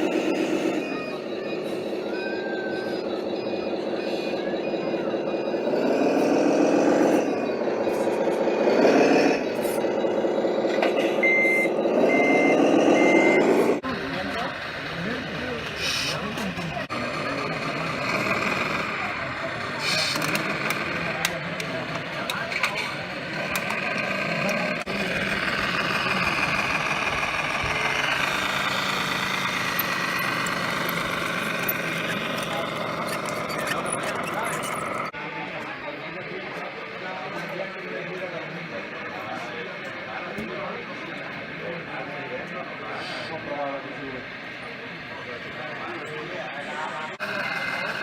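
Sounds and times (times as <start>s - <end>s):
reversing beeps: 0.0s - 20.4s
simulated diesel engine revving: 0.0s - 22.3s, 23.0s - 35.2s
radio-controlled trucks running: 0.0s - 48.0s.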